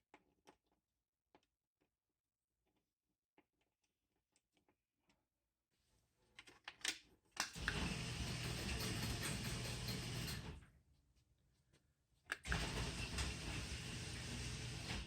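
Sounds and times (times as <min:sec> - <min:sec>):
garage door opener clicks: 0:07.4 - 0:10.6, 0:12.4 - 0:15.0
garage door opener motor humming: 0:07.6 - 0:10.6, 0:12.5 - 0:15.0.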